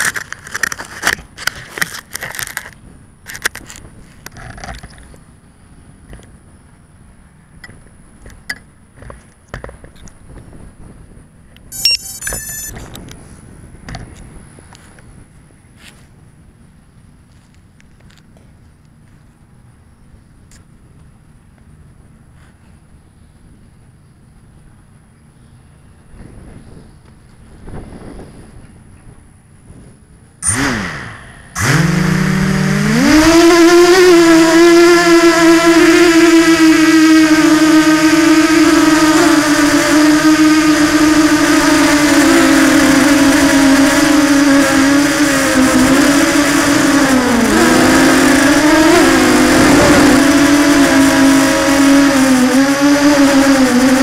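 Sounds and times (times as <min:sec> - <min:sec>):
drone motors whining: 0:11.7 - 0:13.4, 0:30.4 - 0:54.0.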